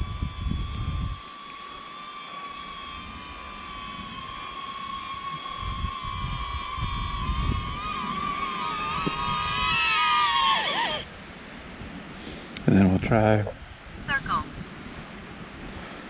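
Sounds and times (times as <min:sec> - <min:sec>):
wind buffeting rumble: 0:00.0 - 0:01.3, 0:03.1 - 0:11.1
drone propellers whining: 0:00.0 - 0:11.1.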